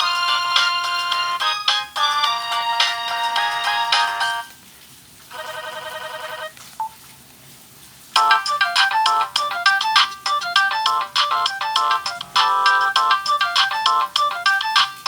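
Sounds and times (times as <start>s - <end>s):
phone ringtones on loudspeaker: 5.3s - 6.6s
rapid repeated tones: 8.2s - 15.0s.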